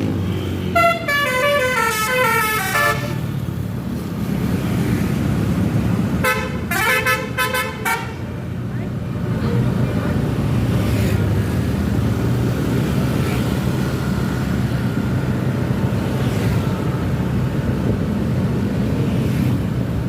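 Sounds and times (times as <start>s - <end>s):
bus engine humming: 0.0s - 20.0s.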